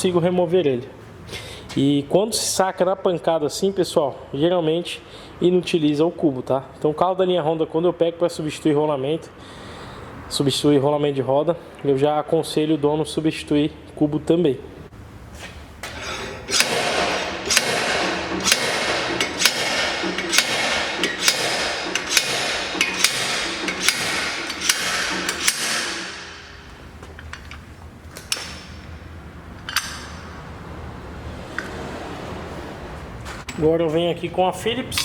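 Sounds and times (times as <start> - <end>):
hammer puller metallic blows: 15.9 - 26.7.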